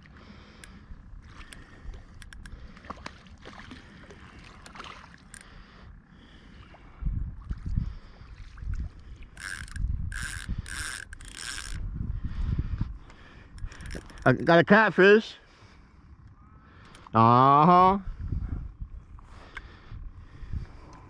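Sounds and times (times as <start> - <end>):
fishing reel clicking: 0.5 - 2.6, 4.6 - 5.6, 9.3 - 11.9, 13.5 - 14.6.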